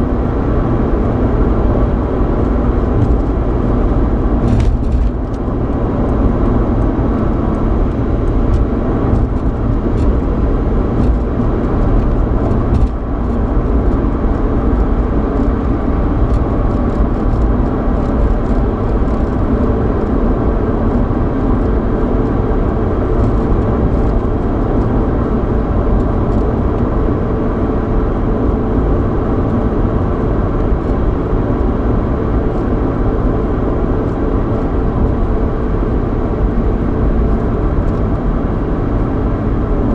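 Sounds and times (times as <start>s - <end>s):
low engine hum: 0.0s - 39.9s
road and tyre noise: 0.0s - 39.9s.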